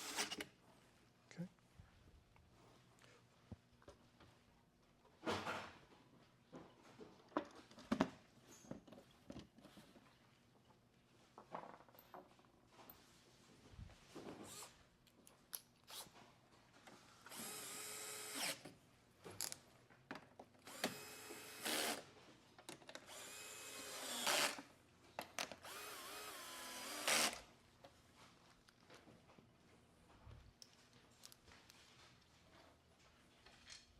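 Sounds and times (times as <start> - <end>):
power driver motor whirring: 23.1 - 24.6, 25.6 - 27.4.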